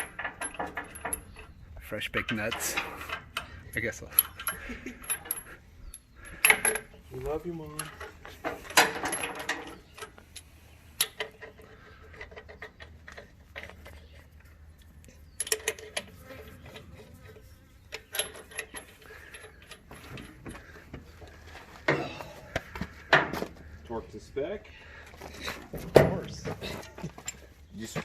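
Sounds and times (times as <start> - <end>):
lug nuts and tools clinking: 0.0 - 7.1, 7.7 - 14.5, 15.2 - 23.6.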